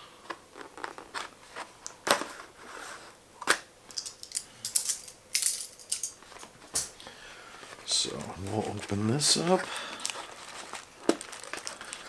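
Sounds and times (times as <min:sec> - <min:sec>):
packaging clicks and crinkles: 0:03.5 - 0:12.0.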